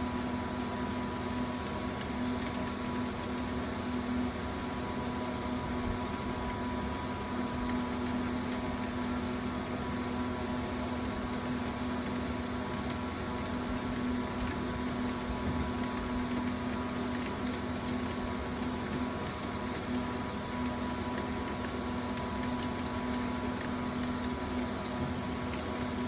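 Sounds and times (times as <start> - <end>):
steady machine hum: 0.0 - 26.0.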